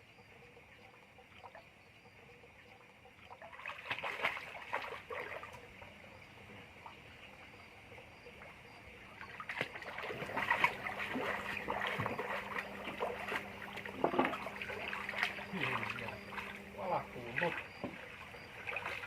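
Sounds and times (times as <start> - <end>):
steady low hum: 0.0 - 19.0
water splashing and trickling: 0.0 - 19.0.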